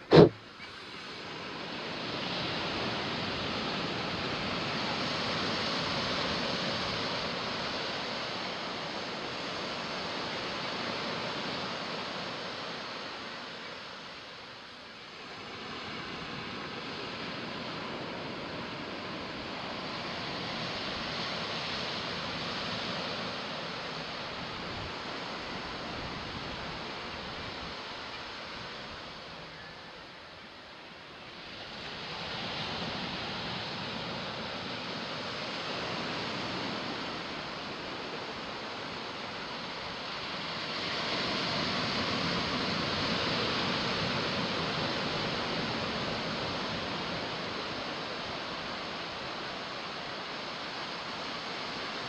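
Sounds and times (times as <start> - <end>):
ocean waves breaking: 0.0 - 13.6.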